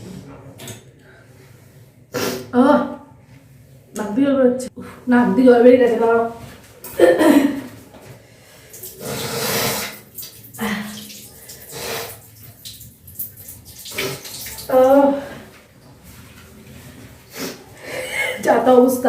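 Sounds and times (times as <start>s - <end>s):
person blowing nose: 2.1s - 2.5s, 9.0s - 10.0s, 11.7s - 12.2s
tap water splashing into basin: 9.8s - 14.9s.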